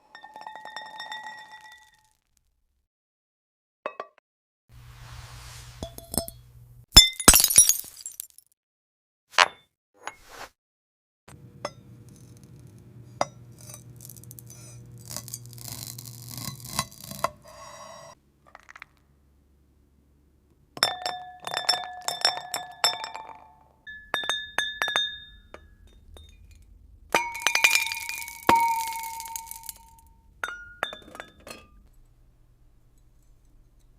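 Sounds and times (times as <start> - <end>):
gritty glass scraping and crunching: 7.2 - 8.4, 13.5 - 19.0, 23.9 - 32.2
glass clinks: 20.8 - 26.6, 27.2 - 32.0
low hum: 25.2 - 30.5.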